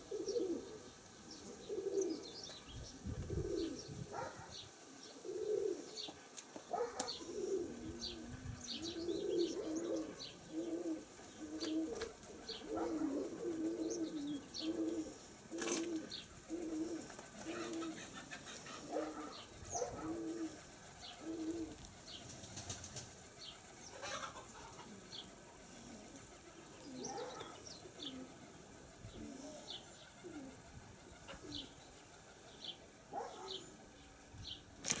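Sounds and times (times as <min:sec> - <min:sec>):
pigeons cooing: 0:00.0 - 0:35.0
small birds chirping: 0:00.0 - 0:35.0
wing flaps: 0:15.4 - 0:24.0, 0:34.8 - 0:35.0.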